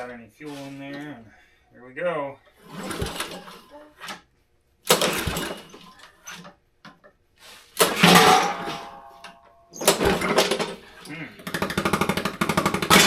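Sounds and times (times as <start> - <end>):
lawnmower engine starting: 2.6 - 4.1, 4.8 - 6.4, 7.5 - 9.0, 9.8 - 13.0.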